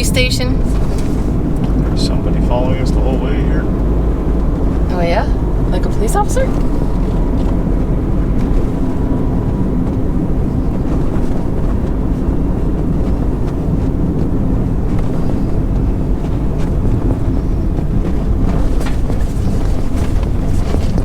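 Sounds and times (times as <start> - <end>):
car engine and tyres rumbling: 0.0 - 21.0
wind noise: 0.0 - 21.0.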